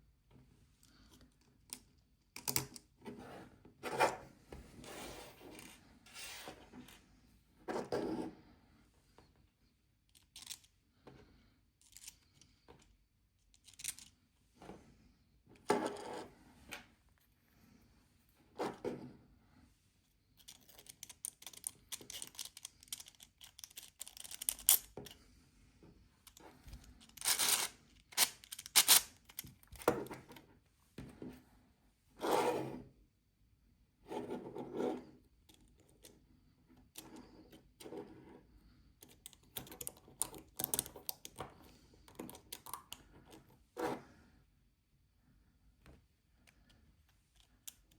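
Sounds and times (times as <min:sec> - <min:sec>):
plastic parts scraping and clicking: 0:10.1 - 0:11.2, 0:11.8 - 0:12.9, 0:13.5 - 0:14.1, 0:20.4 - 0:25.2, 0:26.2 - 0:30.5, 0:39.0 - 0:44.0.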